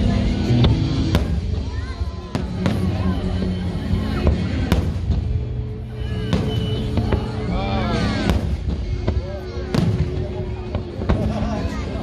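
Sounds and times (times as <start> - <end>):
music: 0.0 - 12.0
people's voices: 0.0 - 12.0
fireworks bangs: 0.4 - 12.0.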